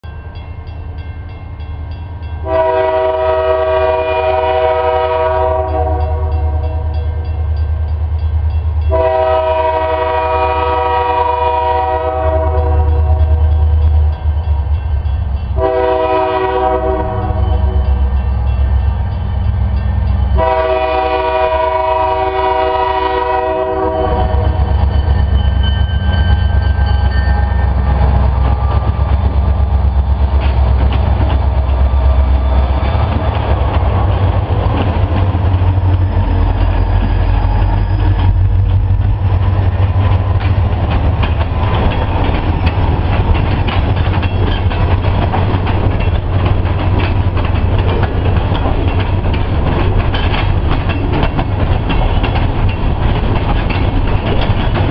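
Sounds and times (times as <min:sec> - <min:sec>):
locomotive air horn chord: 0:02.4 - 0:07.0, 0:08.9 - 0:13.4, 0:15.6 - 0:18.0, 0:20.4 - 0:24.7
diesel engines rumbling: 0:16.6 - 0:54.9
train wheels clattering over rail joints: 0:27.8 - 0:54.9.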